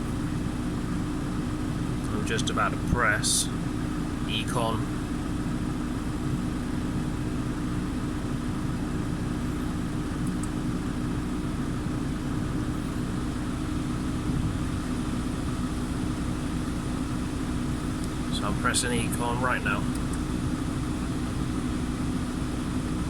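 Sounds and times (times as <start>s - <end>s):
car engine idling: 0.0s - 23.0s.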